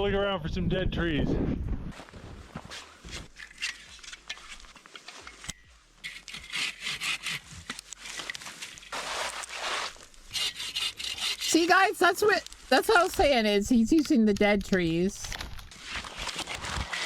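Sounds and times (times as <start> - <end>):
saw cutting dry wood: 6.0 - 7.9, 9.0 - 12.4, 16.3 - 17.0.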